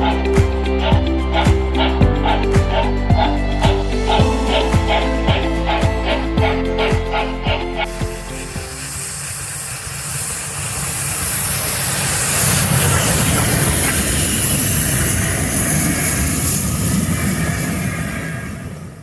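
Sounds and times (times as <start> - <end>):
steam train low rumble: 3.4 - 19.0
steam hissing: 6.4 - 19.0.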